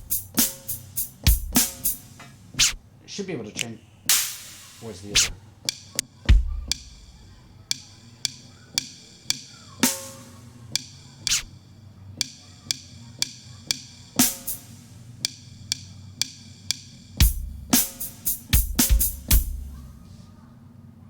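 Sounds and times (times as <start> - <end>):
jazz drum kit beat: 0.0 - 2.8, 4.1 - 11.6, 12.2 - 20.2
bass drum hit: 6.3 - 7.2.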